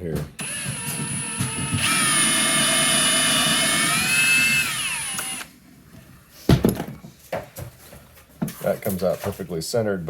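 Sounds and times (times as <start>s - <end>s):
power drill whining: 0.4s - 5.5s.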